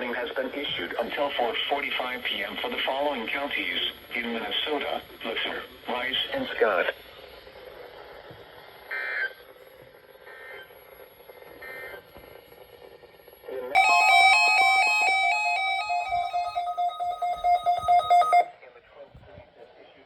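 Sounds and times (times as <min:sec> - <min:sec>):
electronic tone sequence: 0:13.8 - 0:18.5.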